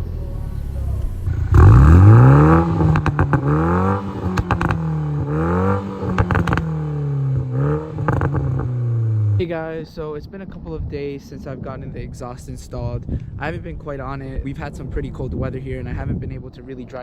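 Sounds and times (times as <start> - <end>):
car engine idling and revving: 0.0 - 9.5
exhaust cracks: 0.0 - 9.6.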